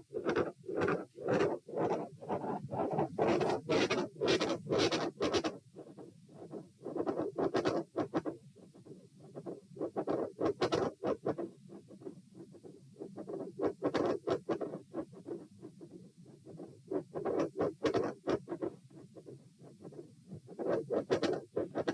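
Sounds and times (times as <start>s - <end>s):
heartbeats with murmur: 0.0s - 7.8s
scratchy rubbing noise: 0.0s - 11.5s.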